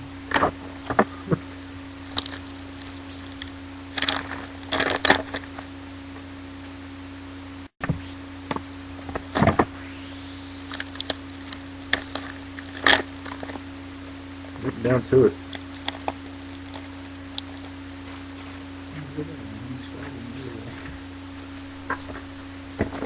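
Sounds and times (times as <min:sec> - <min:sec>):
steady electrical hum: 0:00.0 - 0:23.0
cards and wrappers rustling: 0:04.0 - 0:05.6.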